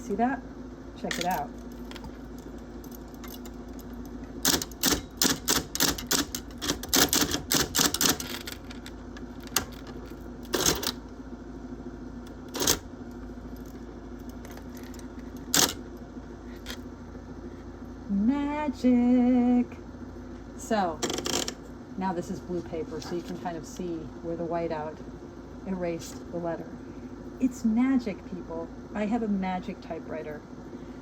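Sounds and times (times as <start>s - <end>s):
electric typewriter humming: 1.0s - 11.1s, 12.2s - 16.8s, 20.9s - 21.6s
typewriter keys striking: 4.4s - 8.7s.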